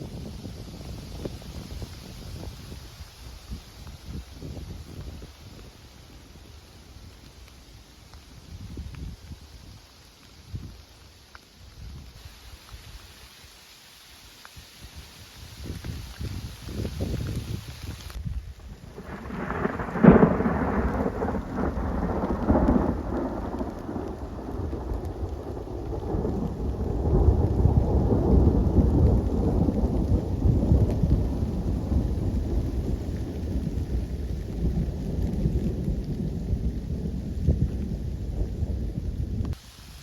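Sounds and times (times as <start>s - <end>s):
rain falling: 0.0s - 40.0s
low thunder rumble: 18.0s - 39.6s
thunder clap: 18.7s - 39.6s.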